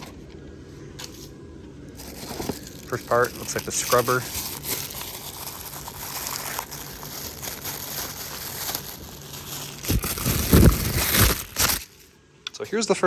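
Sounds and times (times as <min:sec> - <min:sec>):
packaging crinkling and rustling: 0:01.9 - 0:12.2.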